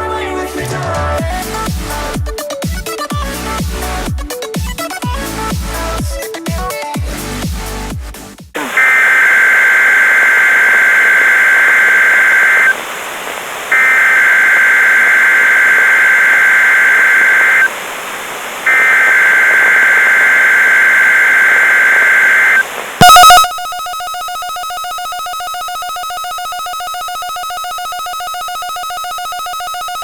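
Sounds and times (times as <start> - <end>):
digital data tone bursts: 8.6 - 23.5
loud steady alert tone: 18.6 - 23.5.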